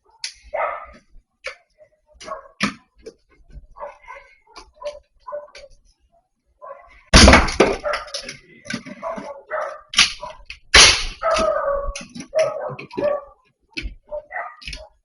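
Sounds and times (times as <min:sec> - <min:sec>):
dog barking: 0:00.0 - 0:02.6, 0:03.7 - 0:07.0, 0:07.7 - 0:08.2, 0:08.9 - 0:10.5, 0:11.2 - 0:15.0
dog drawn-out call: 0:11.2 - 0:13.4.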